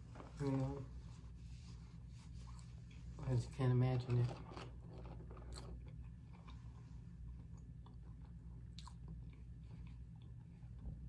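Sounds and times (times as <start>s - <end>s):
person chewing food: 4.5s - 10.8s.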